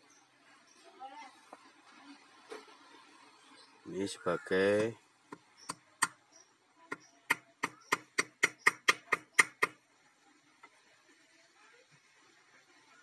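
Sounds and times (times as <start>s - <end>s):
small hammer tapping metal: 7.3s - 9.8s.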